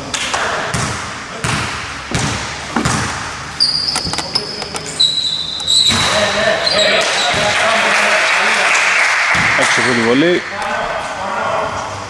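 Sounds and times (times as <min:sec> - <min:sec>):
basketball bouncing on floor: 0:00.7 - 0:04.4, 0:05.8 - 0:06.2
short high squeaks: 0:03.6 - 0:07.0.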